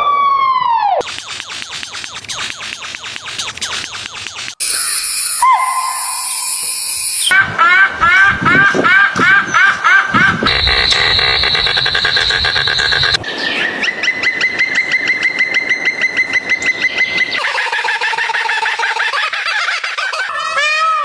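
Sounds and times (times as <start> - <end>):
rapid bird chirps: 1.0 - 7.3, 10.5 - 20.2
high-pitched bird call: 1.0 - 7.8, 10.5 - 21.0
held tone: 1.2 - 7.3
lower animal call: 4.6 - 8.6.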